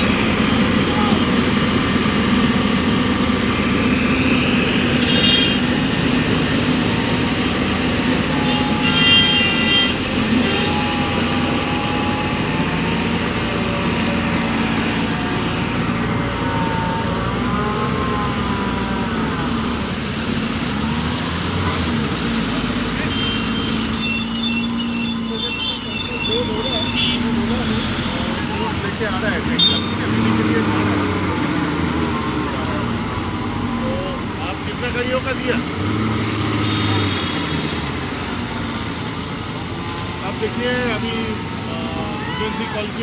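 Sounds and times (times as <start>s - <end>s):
diesel engine running: 0.0s - 43.0s
indistinct voices: 0.0s - 43.0s
short high tones: 23.0s - 28.7s.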